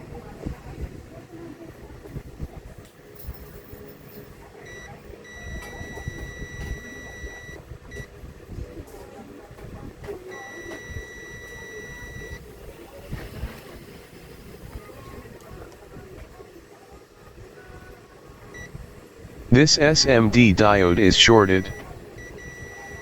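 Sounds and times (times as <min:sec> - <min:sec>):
multimeter beeping: 0:04.7 - 0:07.6, 0:10.4 - 0:12.4.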